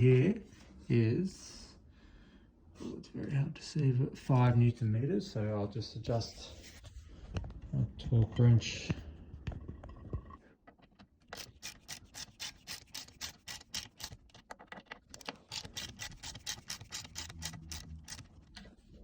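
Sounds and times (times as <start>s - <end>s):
torque wrench clicking: 11.3s - 14.4s, 15.2s - 18.3s.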